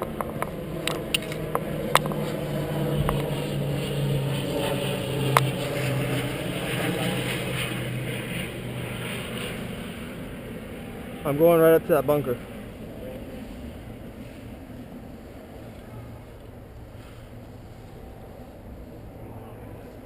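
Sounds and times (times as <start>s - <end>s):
low motor hum: 0.0s - 11.4s.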